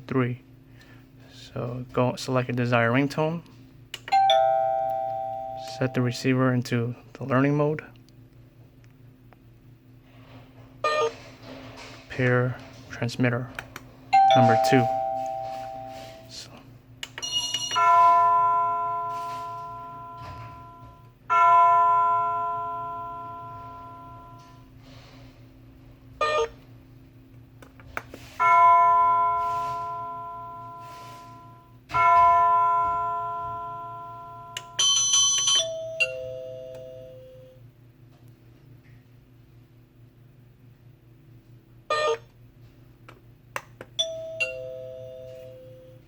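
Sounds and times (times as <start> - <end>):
two-note ding-dong: 4.1 - 6.2, 14.2 - 16.2, 28.4 - 34.6
doorbell chime tone: 4.1 - 6.3, 14.1 - 16.3, 17.2 - 24.6, 28.4 - 37.6, 44.0 - 46.0.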